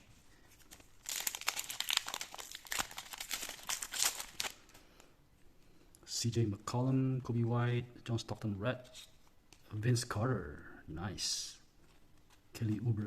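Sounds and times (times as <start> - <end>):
wrapper tearing and crackling: 0.6 - 4.6.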